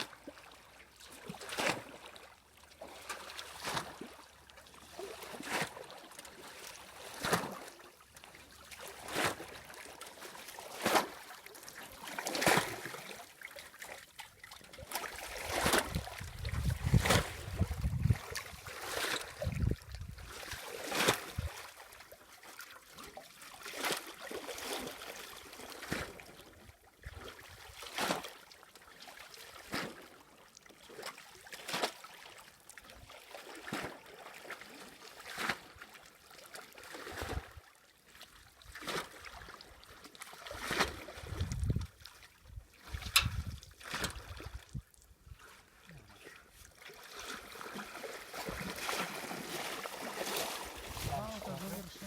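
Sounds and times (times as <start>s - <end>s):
water splashing and sloshing: 0.0s - 52.0s.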